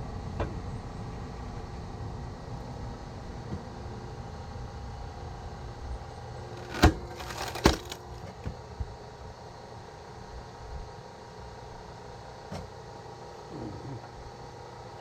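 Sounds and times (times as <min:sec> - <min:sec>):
log splitter humming: 0:06.4 - 0:08.4
wood cracking: 0:06.6 - 0:08.2.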